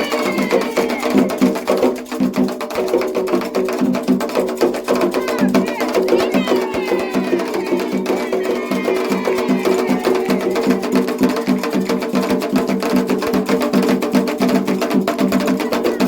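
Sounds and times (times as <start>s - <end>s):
voices singing: 0.0s - 1.7s, 4.8s - 13.8s, 15.4s - 16.0s
hand drums: 0.0s - 16.0s.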